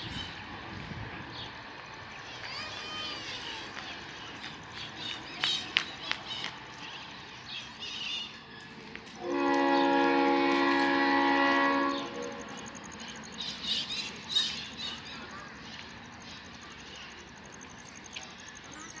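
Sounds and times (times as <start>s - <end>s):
locomotive air horn blast: 9.2s - 12.7s.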